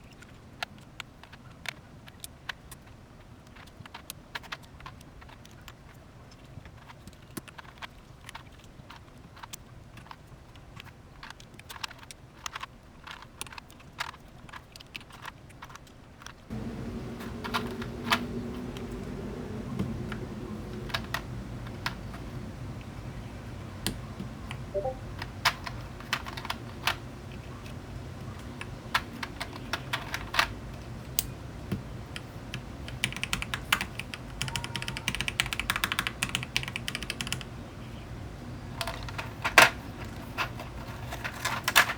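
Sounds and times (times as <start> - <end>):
keycaps clacking onto switches: 16.5 - 22.9, 23.8 - 37.5
steady low background sound: 16.5 - 25.9.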